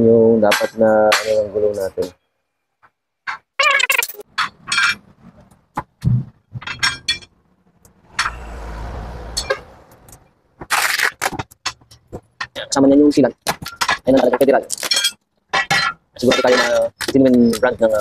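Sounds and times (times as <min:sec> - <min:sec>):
clinks of metal tools: 0:04.1 - 0:05.0, 0:06.6 - 0:07.3, 0:13.6 - 0:18.0.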